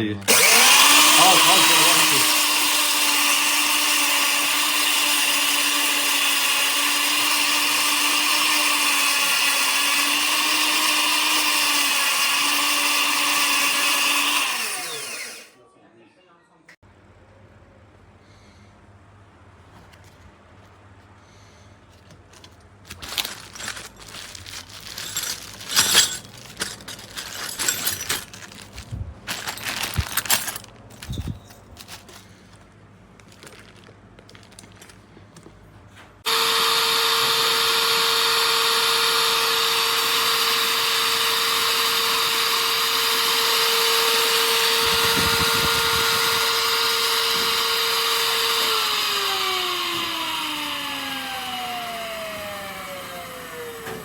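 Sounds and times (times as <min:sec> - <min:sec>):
electric grain mill whining: 0:00.0 - 0:15.6, 0:36.2 - 0:54.0
parts clattering and knocking: 0:21.9 - 0:35.6, 0:42.7 - 0:49.2.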